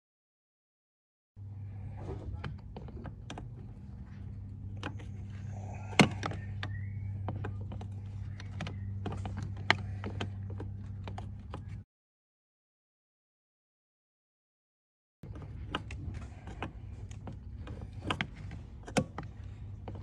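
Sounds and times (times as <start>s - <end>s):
steady low hum: 1.4s - 11.8s, 15.2s - 20.0s.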